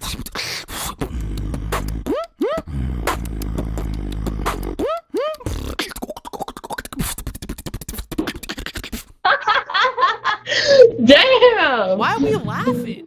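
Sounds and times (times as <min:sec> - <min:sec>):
beatboxing: 0:00.0 - 0:09.2
person speaking: 0:10.9 - 0:13.0.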